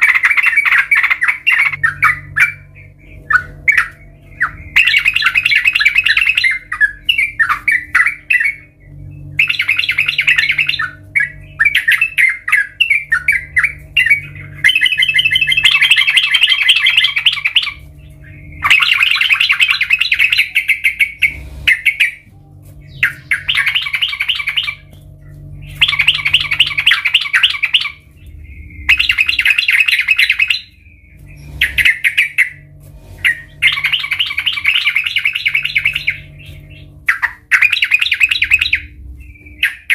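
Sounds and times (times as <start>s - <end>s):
bulbul chattering song: 0.0s - 39.9s
faint low hum: 0.0s - 39.9s.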